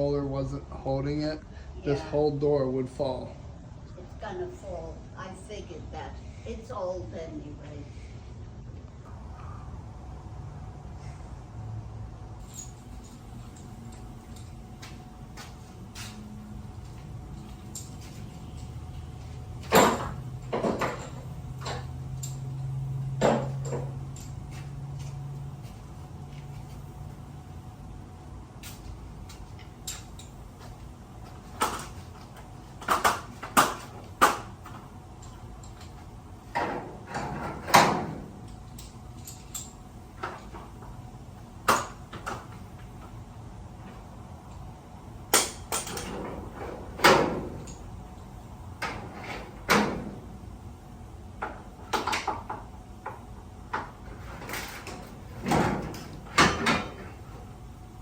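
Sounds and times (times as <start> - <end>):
metal garage door rattling: 19.6 - 24.8, 36.4 - 38.5, 53.9 - 57.5.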